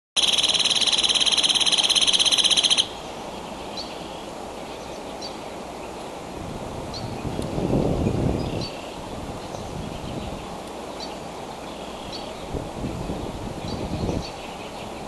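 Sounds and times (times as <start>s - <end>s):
bird buzzing trill: 0.2s - 3.1s
faint high bird chirps: 0.2s - 5.4s.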